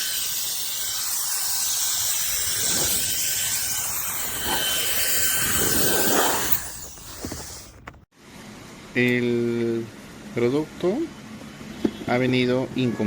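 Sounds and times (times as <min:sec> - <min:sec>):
air duster fan blowing: 0:00.0 - 0:07.9
thin motor whine: 0:00.0 - 0:07.9.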